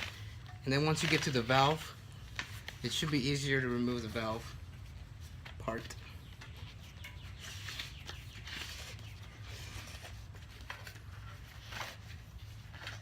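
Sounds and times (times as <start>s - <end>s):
rubber scraping against tyre: 6.4s - 13.0s.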